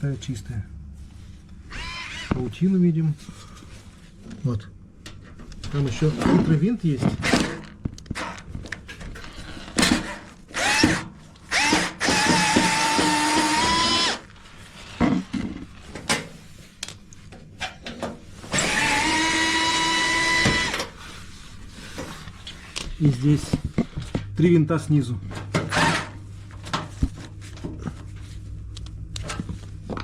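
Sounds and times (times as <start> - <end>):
cordless screwdriver motor whine: 1.7 - 2.4, 10.6 - 14.2, 18.5 - 20.9.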